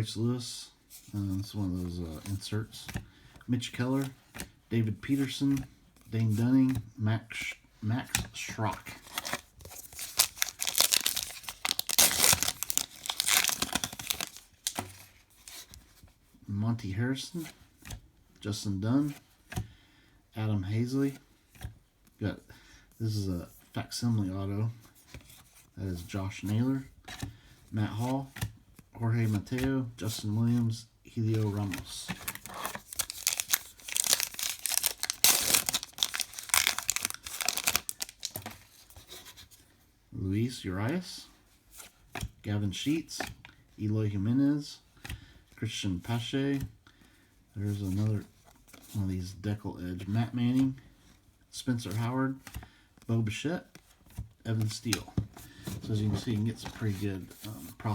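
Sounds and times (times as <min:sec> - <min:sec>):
wrapper tearing and crinkling: 0:09.1 - 0:14.8, 0:32.3 - 0:38.6.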